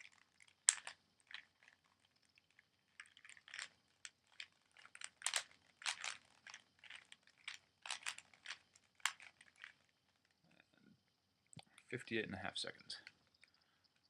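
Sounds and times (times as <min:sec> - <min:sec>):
puzzle cube layers clicking: 0:00.0 - 0:09.9.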